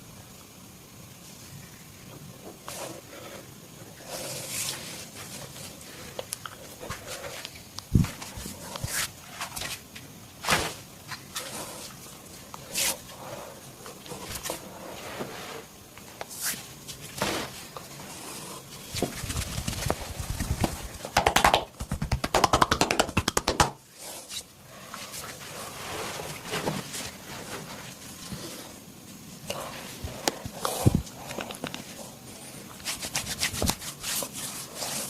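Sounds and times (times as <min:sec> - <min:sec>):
fast rhythmic massage tapping: 0:19.2 - 0:23.8
hands slapping skin: 0:19.3 - 0:23.8.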